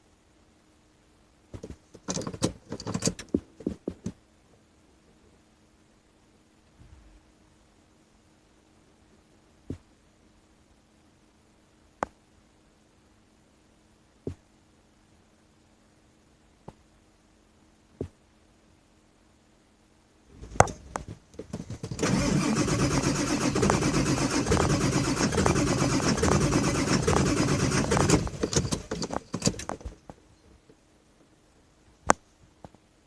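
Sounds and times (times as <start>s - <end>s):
engine popping: 21.4s - 29.9s
diesel engine cranking: 21.5s - 29.8s.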